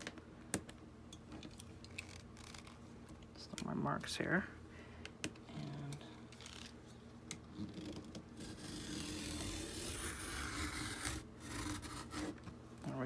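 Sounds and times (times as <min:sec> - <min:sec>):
blade rasping through cardboard: 0:08.4 - 0:12.4.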